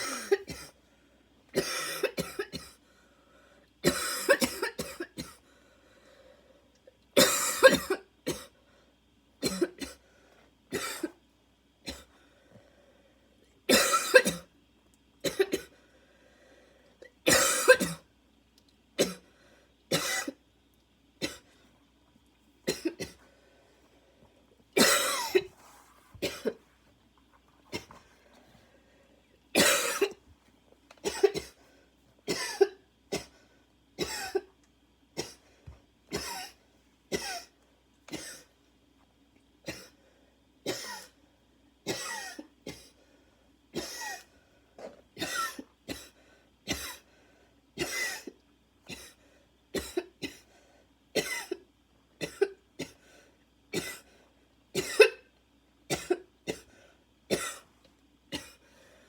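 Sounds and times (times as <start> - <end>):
woman coughing harshly: 0.0 - 0.8, 1.6 - 2.8, 3.8 - 5.4, 7.2 - 8.5, 9.4 - 10.0, 10.7 - 11.2, 13.7 - 14.5, 15.2 - 15.7, 17.2 - 18.1, 19.0 - 19.2, 19.9 - 20.4, 22.7 - 23.2, 24.8 - 25.6, 26.2 - 26.6, 29.5 - 30.2, 31.0 - 31.6, 32.3 - 33.3, 34.0 - 34.5, 36.1 - 37.5, 38.1 - 38.5, 40.7 - 41.2, 41.9 - 43.0, 43.8 - 47.0, 47.8 - 49.2, 49.8 - 50.5, 51.2 - 51.6, 52.2 - 53.0, 53.7 - 54.1, 54.8 - 55.3, 55.9 - 56.7, 57.3 - 57.7, 58.3 - 58.6.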